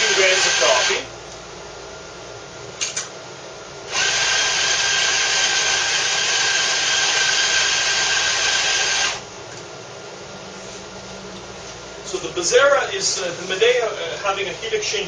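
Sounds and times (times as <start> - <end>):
coffee grinder grinding: 0.0 - 1.0, 3.9 - 9.2.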